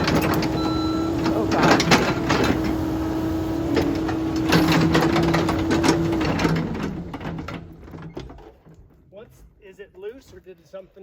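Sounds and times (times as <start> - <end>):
excavator engine whining: 0.0 - 8.5
clattering knocks: 0.0 - 9.1.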